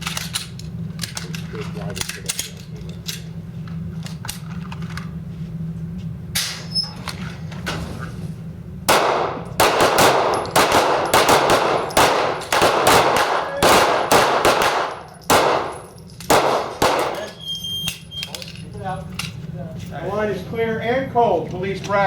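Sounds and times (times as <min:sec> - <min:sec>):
pistol shots: 0:08.9 - 0:17.4.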